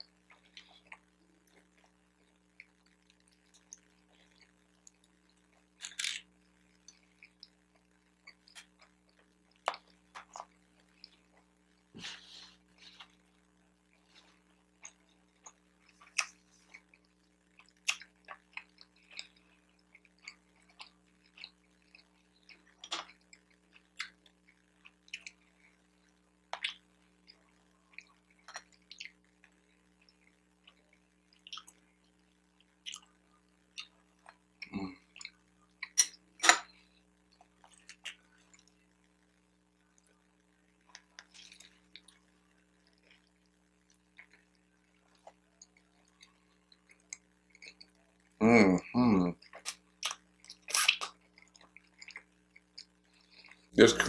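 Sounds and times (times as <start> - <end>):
chewing and mouth smacking: 14.0 - 36.0, 37.3 - 38.8, 40.8 - 48.0, 49.4 - 53.7.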